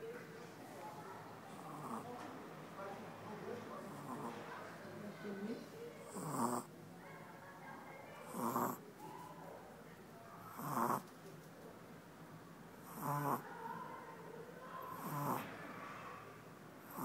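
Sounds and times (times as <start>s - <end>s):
dog snoring: 1.6s - 2.1s, 3.8s - 4.4s, 6.0s - 6.7s, 8.2s - 8.8s, 10.5s - 11.0s, 12.8s - 13.4s, 14.9s - 15.5s
faint dog breathing: 3.7s - 4.6s.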